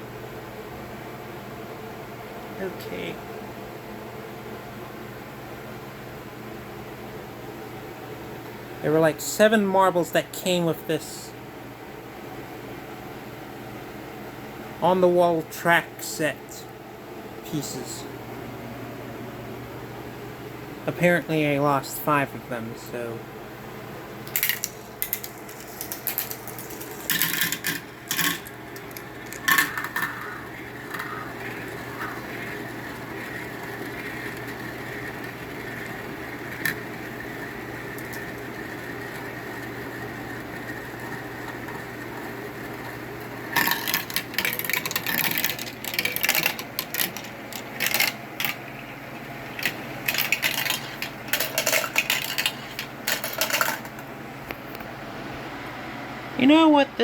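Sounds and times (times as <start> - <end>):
marbles clicking and clacking: 24.3 - 54.0
marbles rolling on plastic track: 24.3 - 54.1.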